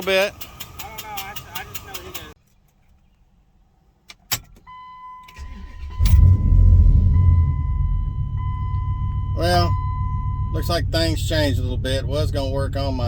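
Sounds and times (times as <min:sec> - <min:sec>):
truck engine starting and idling: 0:00.0 - 0:02.4, 0:04.3 - 0:13.0
electronic warning tone: 0:05.8 - 0:10.7.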